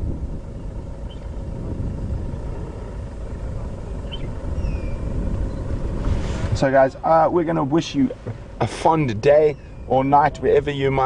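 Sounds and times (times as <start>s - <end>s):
vehicle engine idling: 0.0s - 11.0s
bird chirp: 0.5s - 2.2s, 4.0s - 5.8s, 8.9s - 11.0s.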